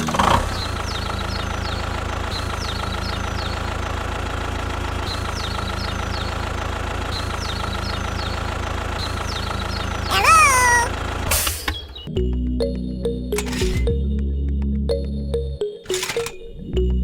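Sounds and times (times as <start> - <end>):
small engine idling: 0.0 - 10.1, 13.4 - 13.8.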